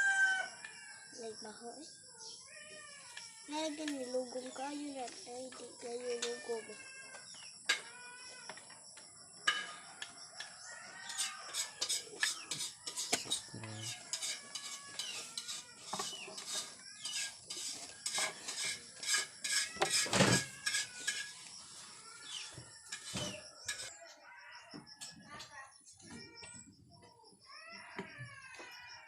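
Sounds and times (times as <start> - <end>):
hand tools clicking and scraping: 3.1 - 6.5, 7.1 - 23.9.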